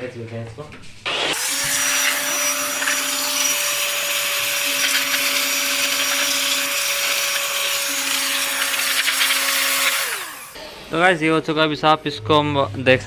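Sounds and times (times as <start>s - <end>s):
electric air blower running: 1.1s - 11.0s.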